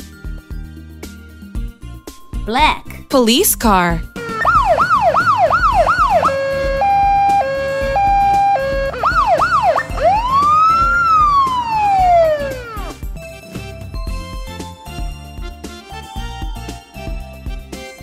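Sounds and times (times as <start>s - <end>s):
police siren: 4.2s - 13.0s.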